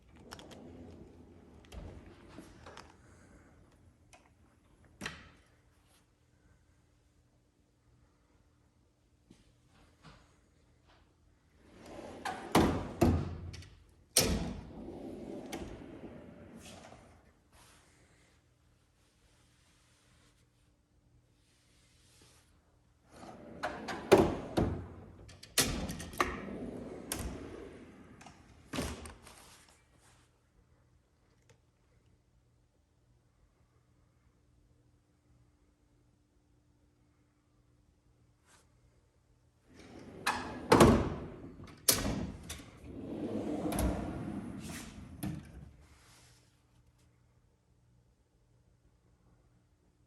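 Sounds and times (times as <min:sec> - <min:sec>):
metal drawers clunking shut: 0:39.8 - 0:45.6.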